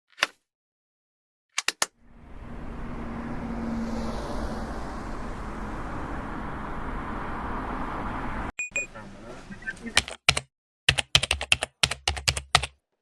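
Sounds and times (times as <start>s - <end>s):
road vehicle noise: 1.9s - 10.1s.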